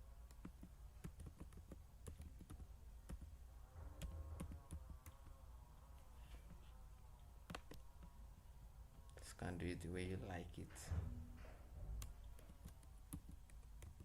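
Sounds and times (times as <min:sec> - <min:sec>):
faint keyboard typing: 0:00.2 - 0:05.4, 0:06.2 - 0:08.2, 0:11.9 - 0:14.0.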